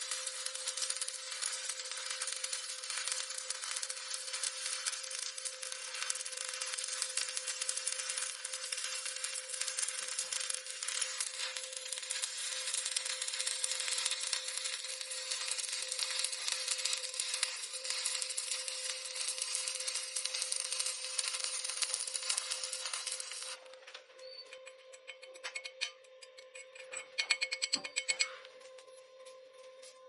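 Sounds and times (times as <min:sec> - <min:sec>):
welding arc crackling: 0:00.0 - 0:23.8.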